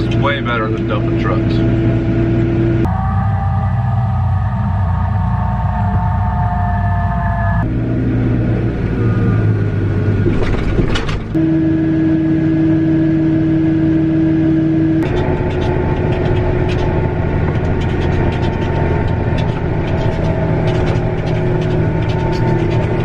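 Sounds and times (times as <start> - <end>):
combine harvester engine drone: 0.0 - 23.0
clicks: 15.0 - 23.0.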